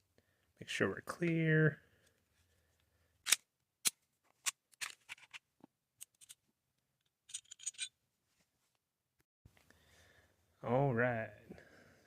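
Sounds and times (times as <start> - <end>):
metal parts rattling: 7.3 - 7.9.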